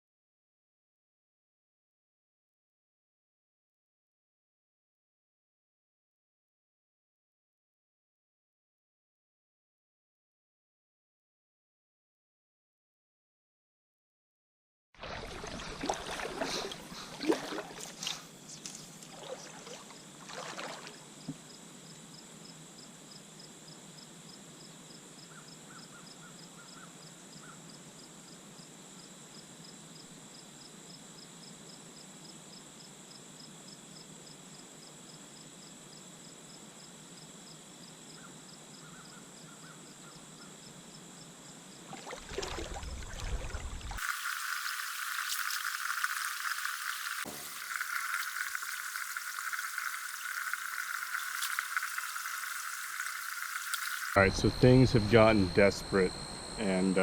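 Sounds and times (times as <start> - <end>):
insect chirping: 15.4 - 42.9, 43.8 - 57.0.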